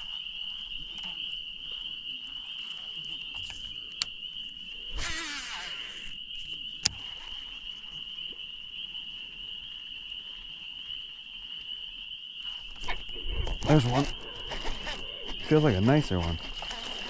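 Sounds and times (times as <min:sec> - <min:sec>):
night insects chorus: 0:00.0 - 0:17.0
brief whirring: 0:04.9 - 0:06.2.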